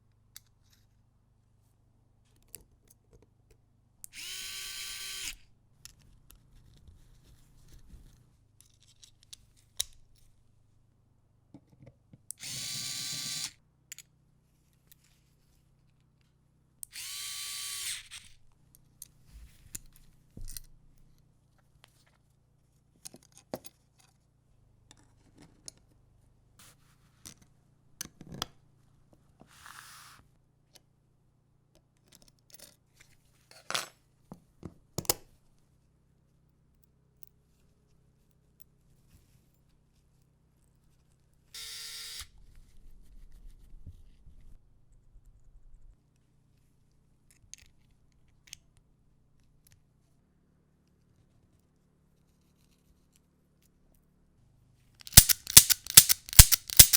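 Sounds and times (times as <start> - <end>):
small power tool running: 4.1 - 5.4, 12.4 - 13.6, 16.9 - 18.3, 55.1 - 56.9
sharp clicks and taps: 55.0 - 56.9.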